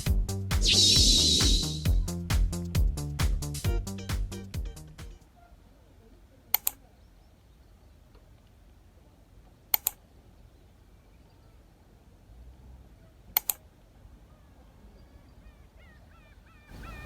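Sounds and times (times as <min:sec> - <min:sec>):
background music: 0:00.0 - 0:05.2
faint steady background noise: 0:04.6 - 0:17.0
sharp double clicks: 0:06.6 - 0:06.8, 0:09.7 - 0:10.0, 0:13.4 - 0:13.6.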